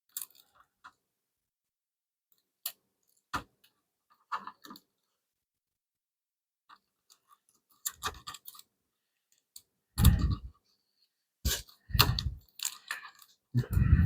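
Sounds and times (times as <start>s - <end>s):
small clicks and rustles: 0.1s - 1.1s, 2.3s - 5.3s, 6.6s - 13.5s.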